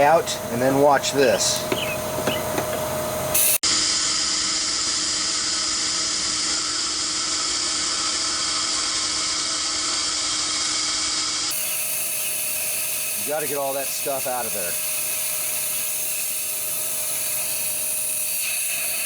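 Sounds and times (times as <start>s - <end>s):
compressed air hissing: 11.5s - 19.0s.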